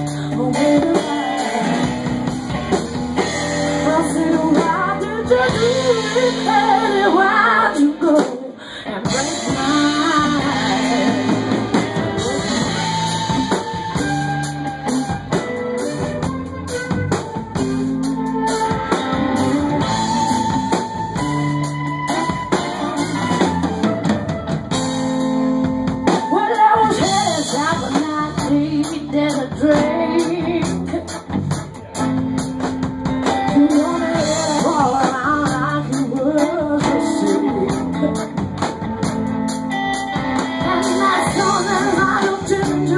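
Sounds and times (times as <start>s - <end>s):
lead vocals: 0.0s - 15.2s, 26.1s - 31.3s, 33.2s - 38.6s, 40.4s - 42.9s
drum kit: 0.0s - 42.9s
guitar: 0.0s - 42.9s.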